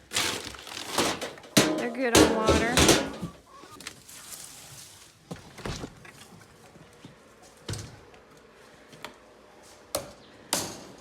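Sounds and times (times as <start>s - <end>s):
knocks and thumps: 1.6s - 3.4s.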